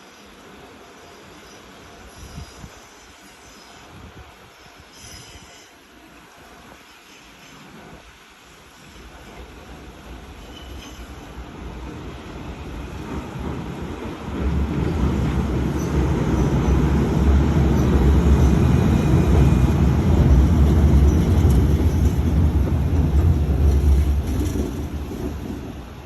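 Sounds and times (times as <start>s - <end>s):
electric train passing: 0.0s - 26.0s.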